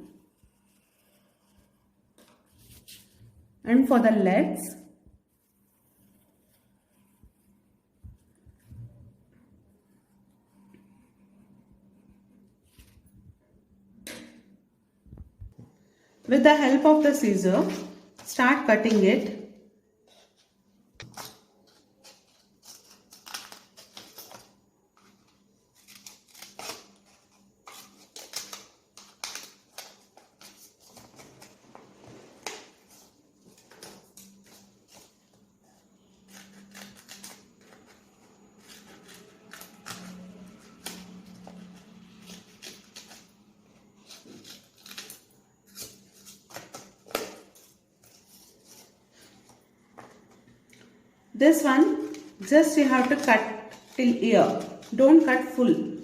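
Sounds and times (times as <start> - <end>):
scissors cutting paper: 20.1 - 31.6, 32.4 - 50.2, 51.4 - 56.0.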